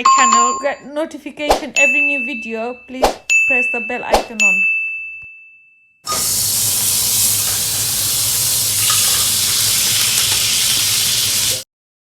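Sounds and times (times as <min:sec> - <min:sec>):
kitchen cooking hiss: 0:06.1 - 0:11.7.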